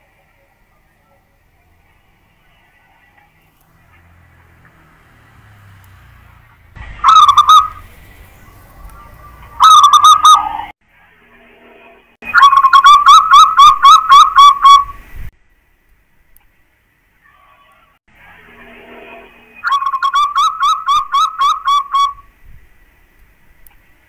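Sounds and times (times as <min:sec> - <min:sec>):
zebra dove cooing: 0:06.9 - 0:10.7.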